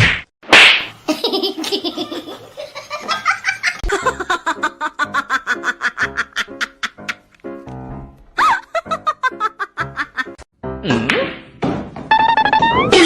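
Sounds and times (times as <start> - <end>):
person laughing hard: 1.1 - 7.3, 8.4 - 11.1.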